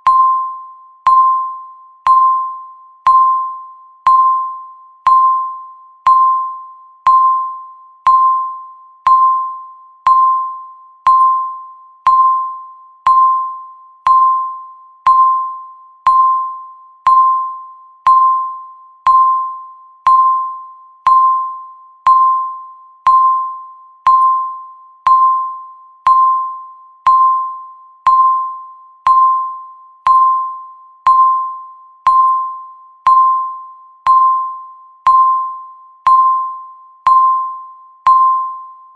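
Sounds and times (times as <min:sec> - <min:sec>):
timer ticking with beeps: 0:00.0 - 0:38.9.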